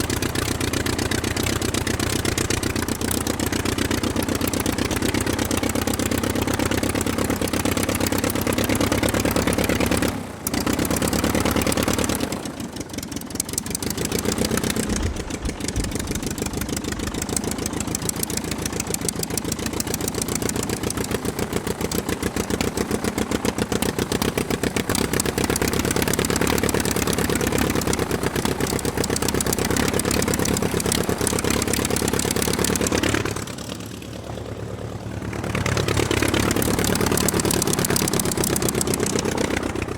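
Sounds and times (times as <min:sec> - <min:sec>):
aircraft piston engine running: 0:00.0 - 0:39.9.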